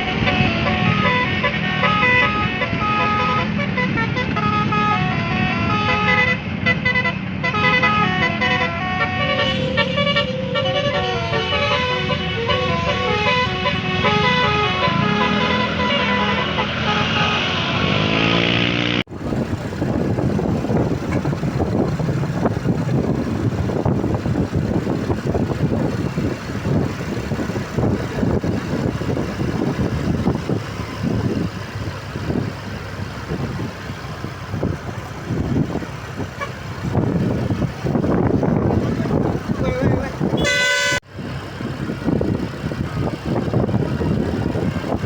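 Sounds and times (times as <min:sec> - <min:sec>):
multi-tone bus horn tune: 0:00.0 - 0:19.0, 0:36.3 - 0:36.6, 0:40.3 - 0:41.1
road traffic noise: 0:00.0 - 0:45.0.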